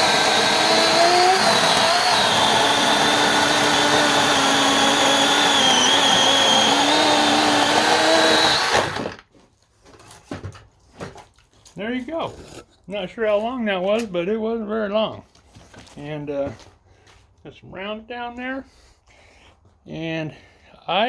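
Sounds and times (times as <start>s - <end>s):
battery chainsaw cutting logs: 0.0s - 9.3s.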